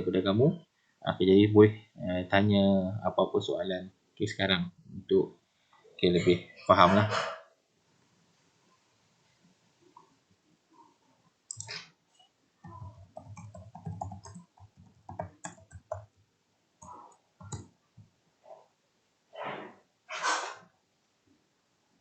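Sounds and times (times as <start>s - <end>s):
sharp clicks: 11.5s - 11.8s.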